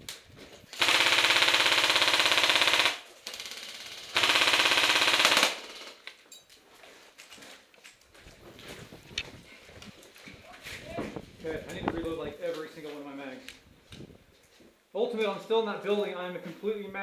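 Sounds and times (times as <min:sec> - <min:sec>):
airsoft gun firing full-auto: 0:00.8 - 0:06.0.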